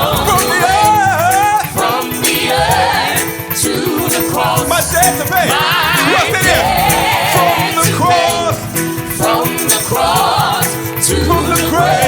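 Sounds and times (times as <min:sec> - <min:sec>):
gospel band playing: 0:00.0 - 0:12.0
singers singing: 0:00.0 - 0:12.0.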